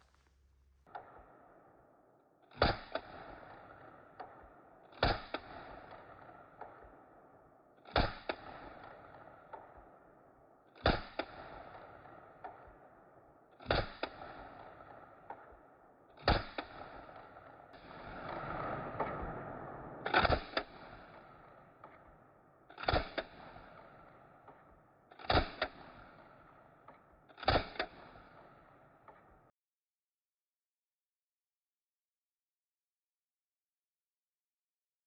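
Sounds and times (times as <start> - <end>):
gunshots: 0.9 - 10.2, 10.8 - 29.4.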